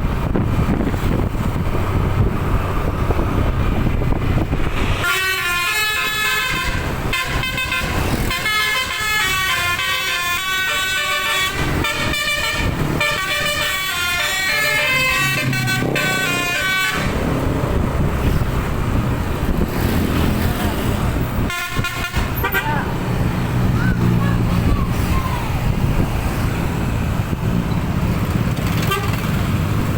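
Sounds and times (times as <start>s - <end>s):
low vehicle rumble: 0.0s - 29.9s
wind: 0.0s - 29.9s
musical bus air horn: 4.9s - 17.3s, 21.4s - 23.0s, 28.8s - 29.4s.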